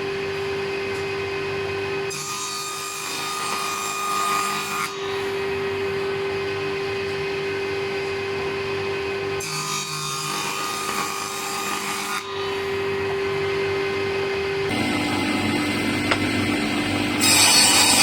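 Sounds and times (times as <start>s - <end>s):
power tool motor hum: 10.1s - 18.0s.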